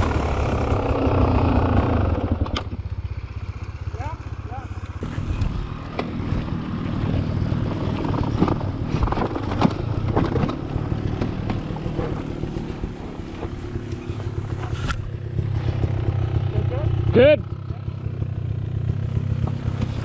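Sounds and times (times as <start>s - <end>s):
knocks and clatter over rough ground: 0.0s - 3.0s, 4.7s - 15.9s, 18.9s - 20.0s
dirt bike engine revving: 0.0s - 20.0s.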